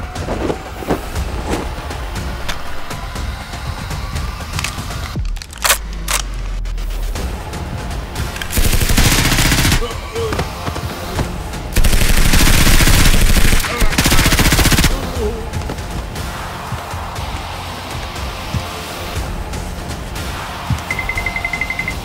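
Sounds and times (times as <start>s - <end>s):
background music: 0.0s - 22.0s
automatic gunfire bursts: 8.4s - 9.9s, 11.8s - 15.0s.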